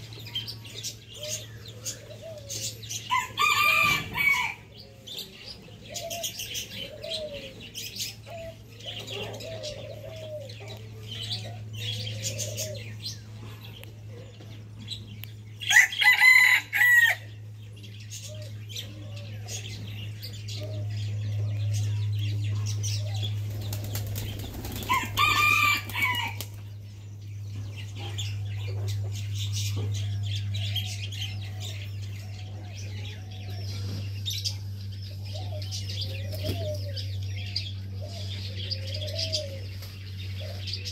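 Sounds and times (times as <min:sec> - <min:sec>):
steady low hum: 0:00.0 - 0:40.9
rooster crowing: 0:03.1 - 0:04.7, 0:15.7 - 0:17.3, 0:24.8 - 0:26.5
small birds chirping: 0:17.4 - 0:40.9.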